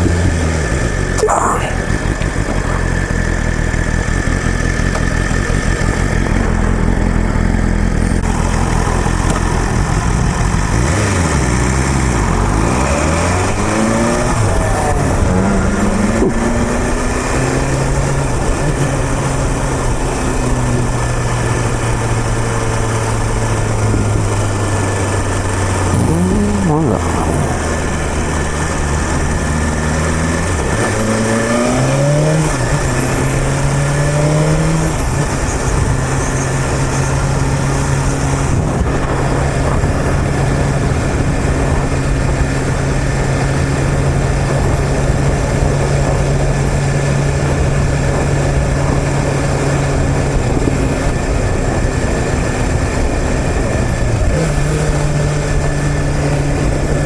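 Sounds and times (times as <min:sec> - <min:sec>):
constant rush of noise: 0:00.0 - 0:57.0
motorcycle engine pulling through gears: 0:01.8 - 0:57.0.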